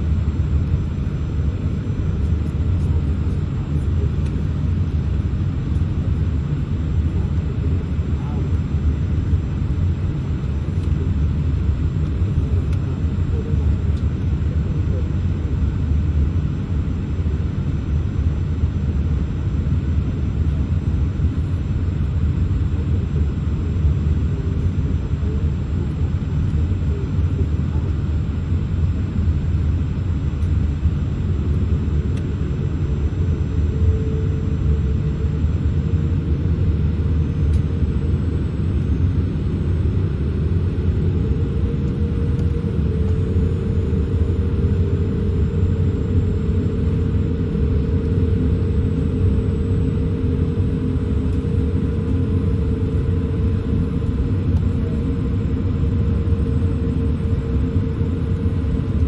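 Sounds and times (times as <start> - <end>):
aircraft cabin low rumble: 0.0 - 59.0.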